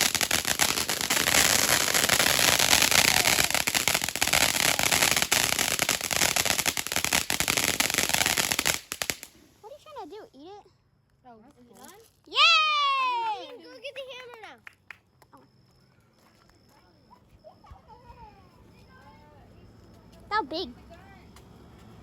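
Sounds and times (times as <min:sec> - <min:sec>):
fireworks crackling: 0:00.0 - 0:10.3
child's voice: 0:20.3 - 0:20.8.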